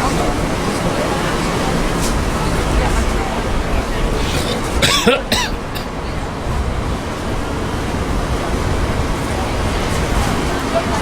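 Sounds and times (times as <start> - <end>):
crowd chatter: 0.0 - 11.0.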